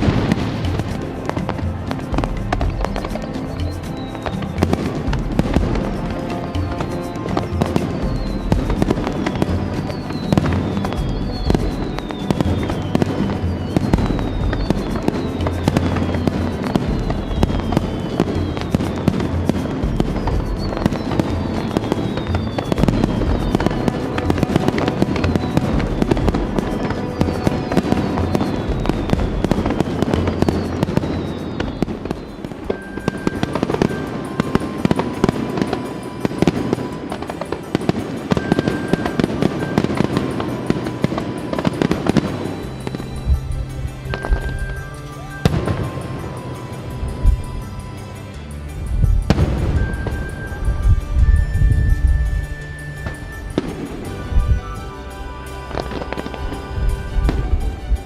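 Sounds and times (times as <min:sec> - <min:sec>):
firework booms and crackles: 0:00.0 - 0:47.9, 0:48.8 - 0:54.6
falling firework whistles: 0:00.0 - 0:58.0.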